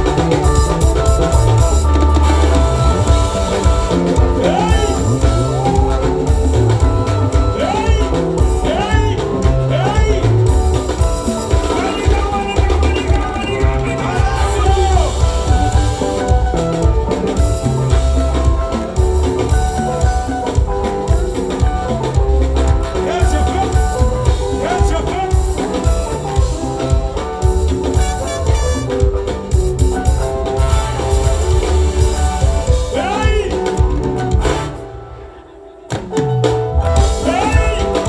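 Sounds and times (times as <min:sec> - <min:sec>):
steady drum beat: 0:00.0 - 0:35.0, 0:35.9 - 0:38.0
live band playing: 0:00.0 - 0:38.0
person singing: 0:03.9 - 0:16.0, 0:32.8 - 0:33.8, 0:37.0 - 0:38.0.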